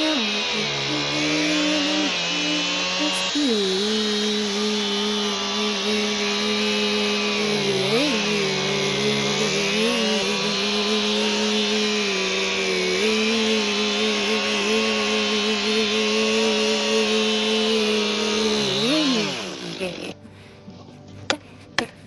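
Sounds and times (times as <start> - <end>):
chainsaw engine running: 0.0 - 22.0.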